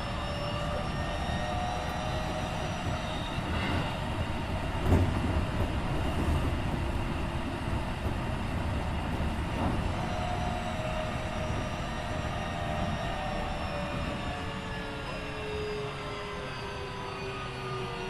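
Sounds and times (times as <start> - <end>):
faint whining tones: 0.0 - 18.0
train wheels on rail: 0.0 - 18.0.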